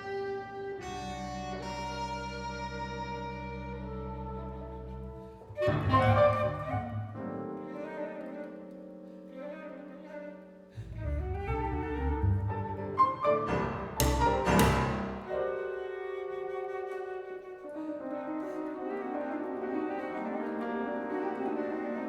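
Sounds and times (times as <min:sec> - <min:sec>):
double bass: 0:00.0 - 0:07.9, 0:10.7 - 0:15.5
clarinet: 0:00.0 - 0:22.0
flute: 0:00.0 - 0:22.0
piano: 0:00.0 - 0:22.0.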